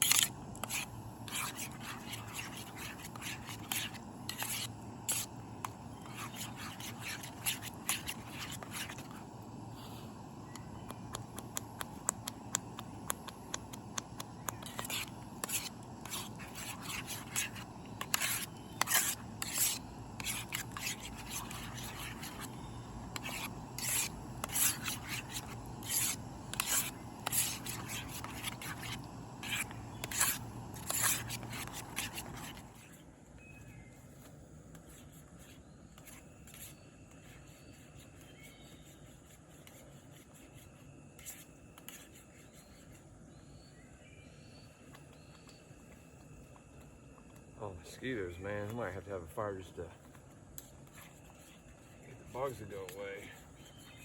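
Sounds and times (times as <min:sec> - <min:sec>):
spoon scraping a pot: 0:11.1 - 0:32.7.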